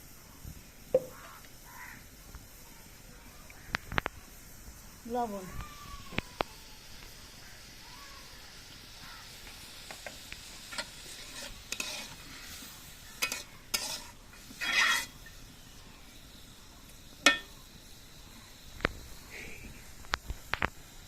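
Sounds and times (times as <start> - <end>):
vegetables sizzling in oil: 0.0 - 21.0
knock on pan: 0.9 - 1.3
spatula scraping a pan: 10.6 - 15.4.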